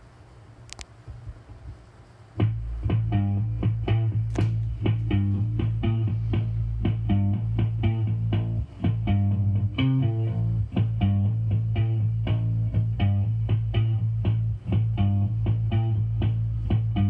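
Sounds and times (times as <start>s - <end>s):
continuous bass line: 2.4s - 17.0s
plucked guitar notes: 2.4s - 17.0s.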